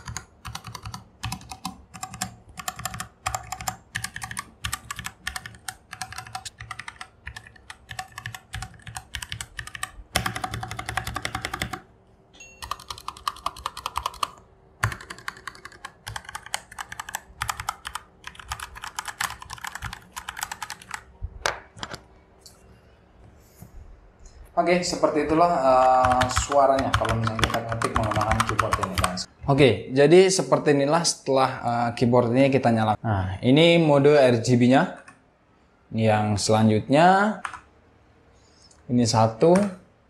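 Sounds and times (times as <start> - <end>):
mechanical keyboard typing: 0.0 - 11.9, 12.6 - 21.1, 25.5 - 29.3, 37.4 - 37.7.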